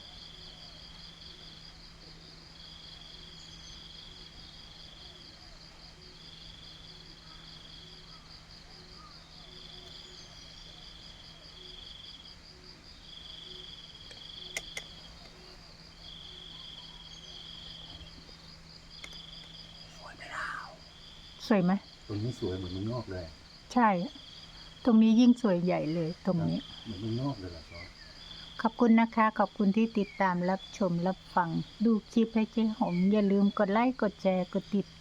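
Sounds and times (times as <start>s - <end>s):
crickets trilling: 0.0s - 35.0s
insect chirping: 0.0s - 35.0s
sharp clicks: 14.1s - 15.4s, 19.0s - 19.6s.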